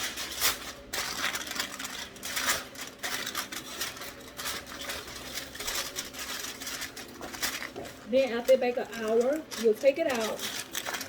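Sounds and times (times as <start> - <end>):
aluminum foil crinkling: 0.0 - 11.0.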